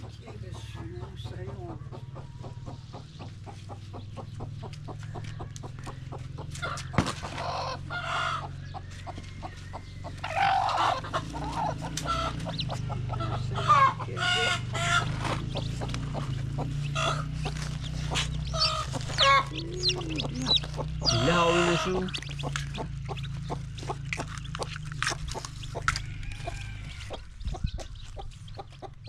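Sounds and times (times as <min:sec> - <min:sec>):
chickens clucking: 0:00.0 - 0:29.0
low steady hum: 0:06.8 - 0:29.0.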